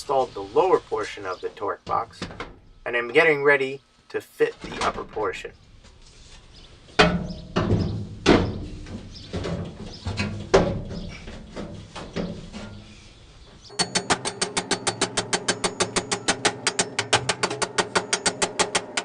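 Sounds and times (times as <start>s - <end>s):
metal knocks and bangs: 1.8s - 2.7s, 6.9s - 12.9s, 13.7s - 19.0s
fast rhythmic metal clatter: 13.7s - 19.0s.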